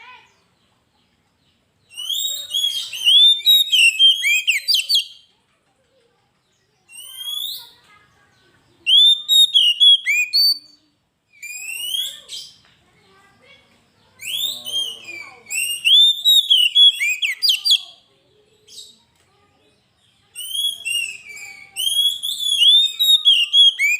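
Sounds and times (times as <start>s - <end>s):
magpie-robin singing whistled notes: 1.8s - 5.3s, 6.9s - 7.8s, 8.8s - 12.6s, 14.2s - 18.0s, 20.3s - 23.9s.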